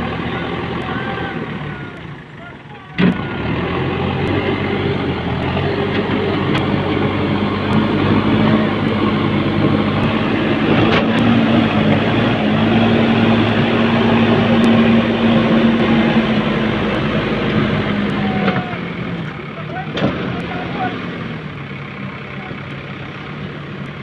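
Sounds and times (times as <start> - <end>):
diesel engines running: 0.0 - 24.0.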